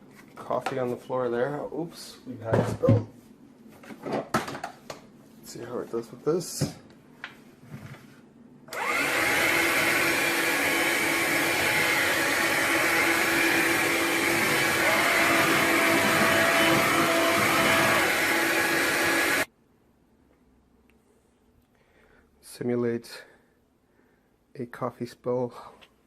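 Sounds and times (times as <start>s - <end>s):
stick vacuum whining: 8.7s - 19.5s.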